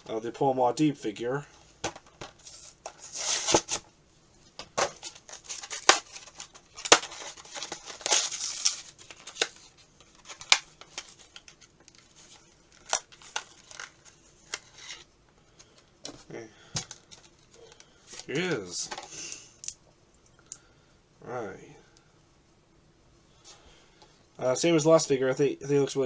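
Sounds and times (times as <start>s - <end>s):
cardboard and plastic rustling: 0.0s - 19.3s.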